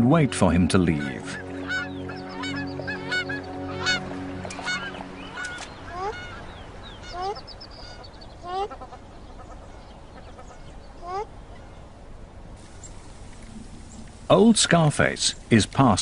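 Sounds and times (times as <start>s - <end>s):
background music: 0.0s - 7.3s
large birds honking: 0.4s - 11.9s.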